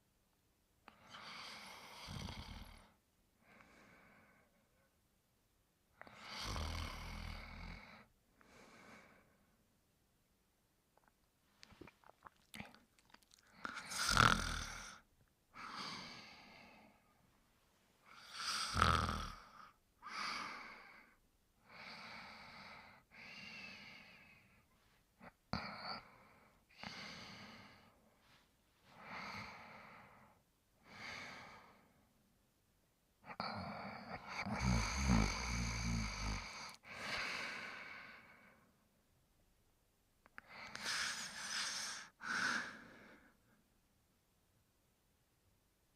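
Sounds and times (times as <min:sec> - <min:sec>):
person snoring: 0:01.1 - 0:02.9, 0:06.0 - 0:08.0, 0:11.8 - 0:15.0, 0:18.1 - 0:20.8, 0:33.3 - 0:37.8, 0:40.7 - 0:42.8.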